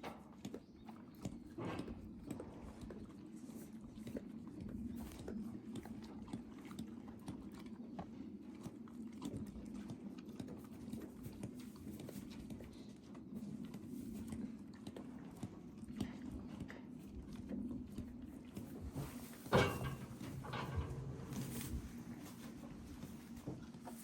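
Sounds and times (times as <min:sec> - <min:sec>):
low steady hum: 0:11.0 - 0:24.0.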